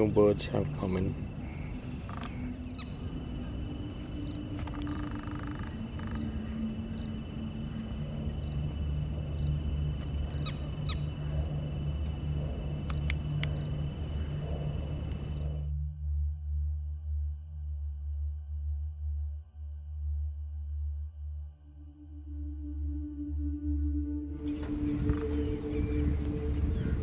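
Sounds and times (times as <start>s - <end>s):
bird chirping: 0.0s - 15.7s, 24.4s - 27.0s
steady low hum: 0.0s - 15.8s, 24.4s - 27.0s.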